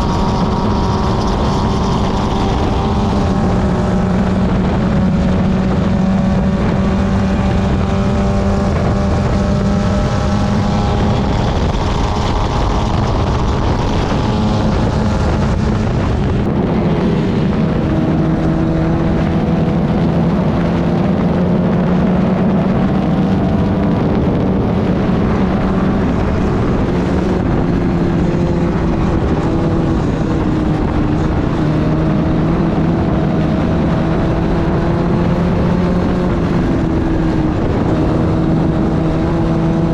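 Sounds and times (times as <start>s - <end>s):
race car engine at high revs: 0.0s - 39.9s
wind rush: 0.0s - 39.9s.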